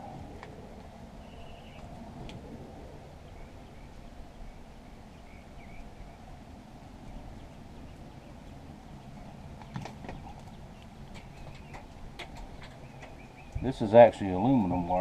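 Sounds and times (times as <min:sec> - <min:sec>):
low background noise: 0:00.0 - 0:15.0
faint bird chirps: 0:01.2 - 0:01.9.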